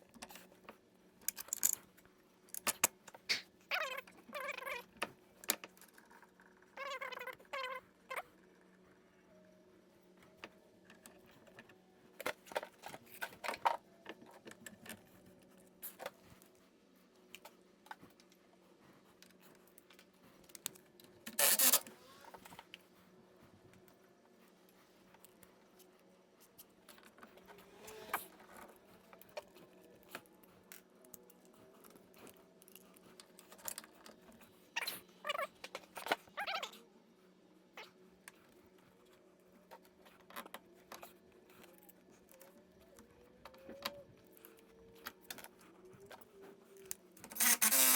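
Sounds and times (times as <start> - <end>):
tools clicking and clattering: 1.2 - 1.8.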